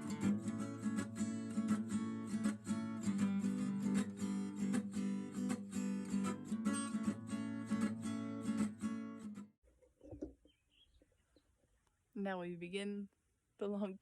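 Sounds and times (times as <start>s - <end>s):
acoustic guitar strumming: 0.0s - 9.5s.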